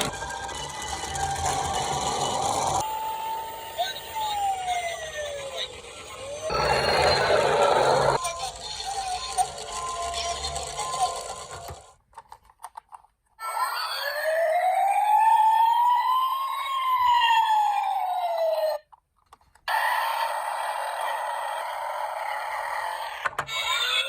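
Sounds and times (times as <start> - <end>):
police siren wailing: 0.6 - 8.2, 13.4 - 18.8.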